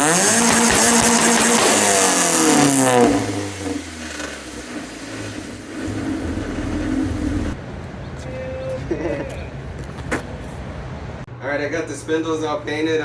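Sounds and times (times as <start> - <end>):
car engine revving then idling: 0.0 - 7.9.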